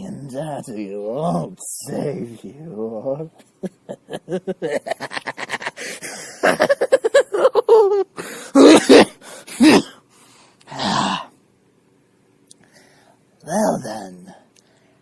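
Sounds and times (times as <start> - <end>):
person laughing maniacally: 3.4 - 9.8.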